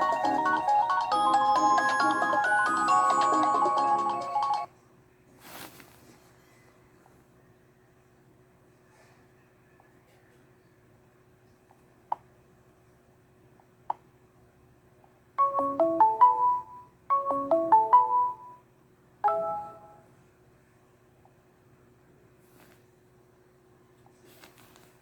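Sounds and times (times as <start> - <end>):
ringtone melody: 0.0 - 4.7, 15.4 - 18.6, 19.2 - 20.1.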